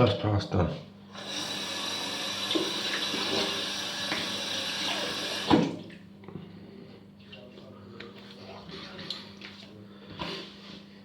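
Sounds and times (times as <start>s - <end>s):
tap running into sink: 2.4s - 4.4s, 5.3s - 5.9s.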